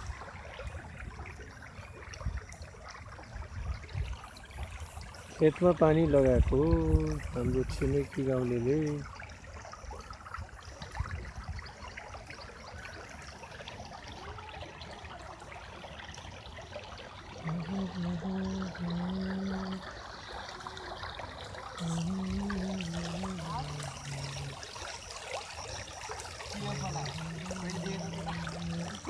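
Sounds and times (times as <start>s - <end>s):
water trickling into a field: 0.0s - 29.0s
low humming tone: 17.4s - 20.0s, 21.8s - 29.0s.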